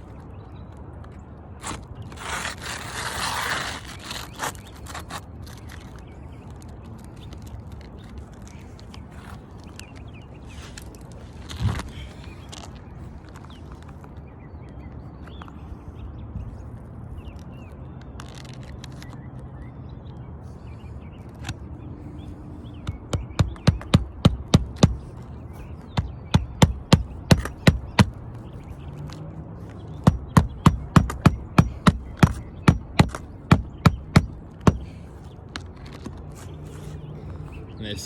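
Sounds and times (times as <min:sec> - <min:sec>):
hammer driving roofing nails: 0:22.8 - 0:28.3, 0:29.9 - 0:35.2.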